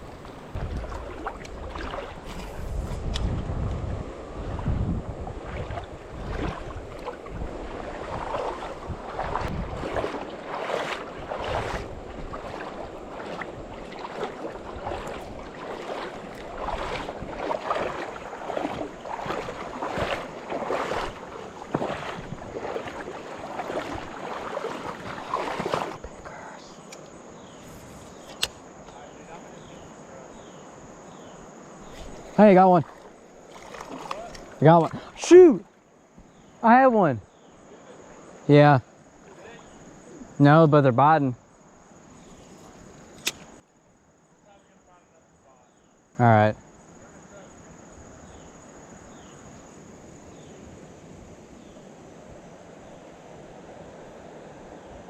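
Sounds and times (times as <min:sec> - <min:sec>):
river water rushing: 0:00.0 - 0:02.6, 0:03.9 - 0:27.4, 0:31.6 - 0:35.8
wind buffeting microphone: 0:00.0 - 0:26.1
insects chirring: 0:00.0 - 0:55.0
sharp click: 0:28.2 - 0:29.0, 0:43.2 - 0:43.5.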